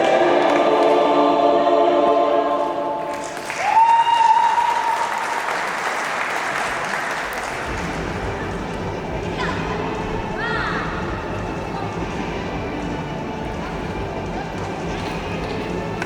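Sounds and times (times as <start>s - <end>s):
choir-like music: 0.0s - 4.8s, 6.5s - 16.0s
audience applause: 3.0s - 8.8s.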